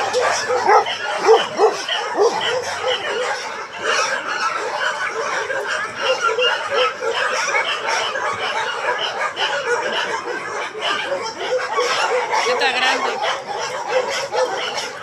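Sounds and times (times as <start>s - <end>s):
chorus of animal calls: 0.0s - 15.0s.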